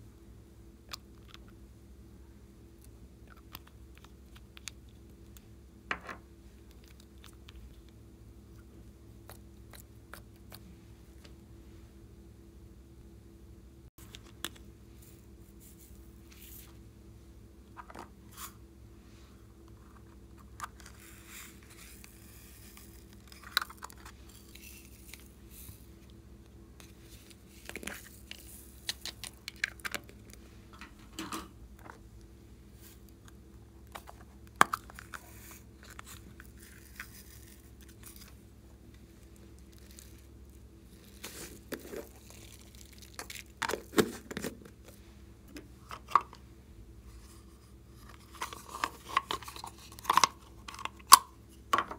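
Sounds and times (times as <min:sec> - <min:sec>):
faint steady hum: 0:00.0 - 0:51.9.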